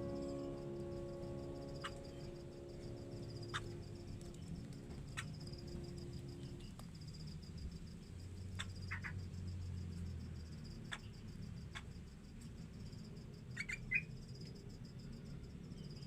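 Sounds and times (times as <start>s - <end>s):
high pulsing insect-like trill: 0.0s - 12.0s.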